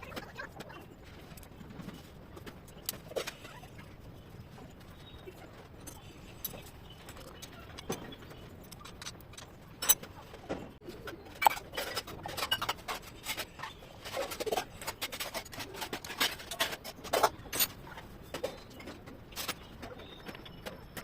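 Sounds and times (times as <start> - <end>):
tools and metal parts clicking: 4.9 - 21.0.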